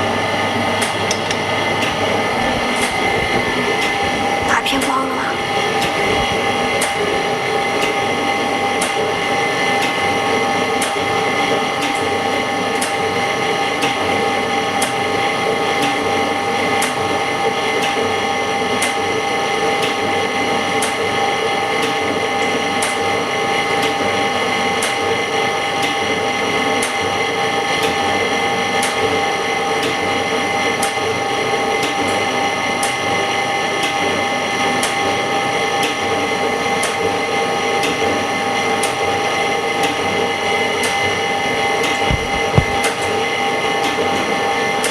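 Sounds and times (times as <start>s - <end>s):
mechanical motor whine: 39.4s - 44.9s.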